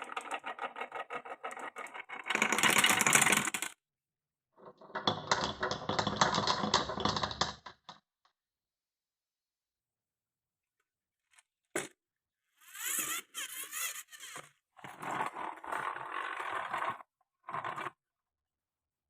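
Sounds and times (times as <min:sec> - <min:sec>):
marbles rolling on wooden run: 0:00.0 - 0:03.8, 0:04.6 - 0:07.9, 0:12.7 - 0:18.0.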